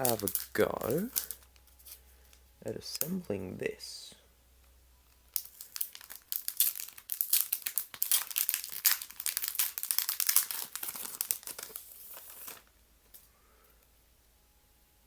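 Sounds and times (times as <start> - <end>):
packaging crinkling and tearing: 0.0 - 2.4, 5.3 - 12.7.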